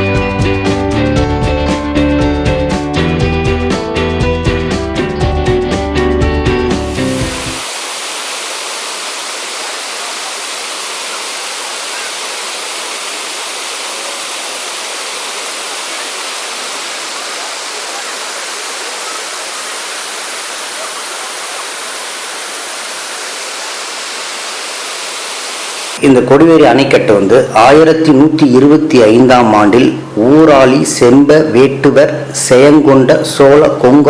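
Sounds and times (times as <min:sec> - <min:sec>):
water rushing over weir: 0:07.5 - 0:26.0.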